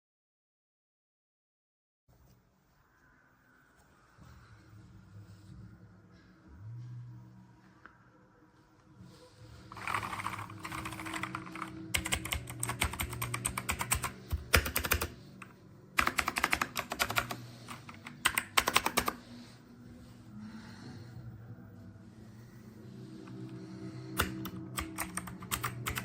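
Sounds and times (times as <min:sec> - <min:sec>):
mechanical keyboard typing: 0:09.7 - 0:19.2, 0:24.1 - 0:26.0.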